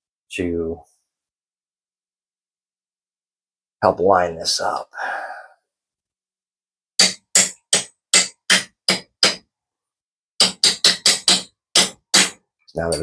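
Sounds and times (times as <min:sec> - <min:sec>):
small hammer tapping punch: 0:10.4 - 0:13.0.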